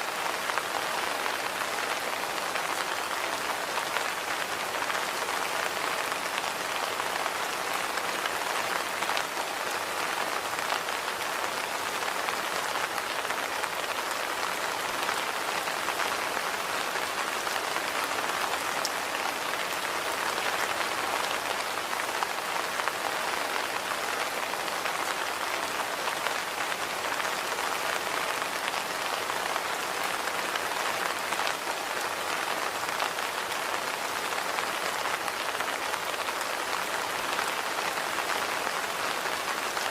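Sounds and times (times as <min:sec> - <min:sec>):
rain pattering on walkway: 0:00.0 - 0:39.9.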